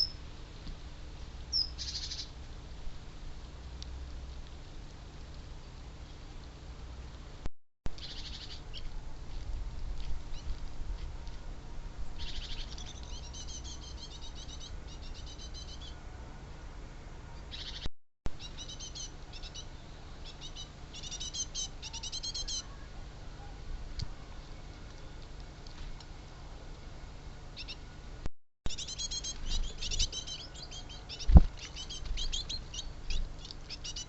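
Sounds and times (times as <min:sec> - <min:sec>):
small birds chirping: 0:00.0 - 0:00.2, 0:01.5 - 0:02.4, 0:08.0 - 0:08.9, 0:12.2 - 0:16.0, 0:17.4 - 0:25.4, 0:27.6 - 0:28.0, 0:28.7 - 0:34.0
steady low rumble: 0:02.3 - 0:13.8.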